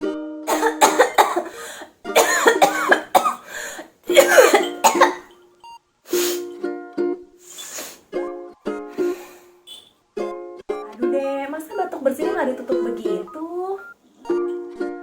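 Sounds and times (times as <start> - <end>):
music: 0.0 - 15.0
person coughing: 0.5 - 5.3.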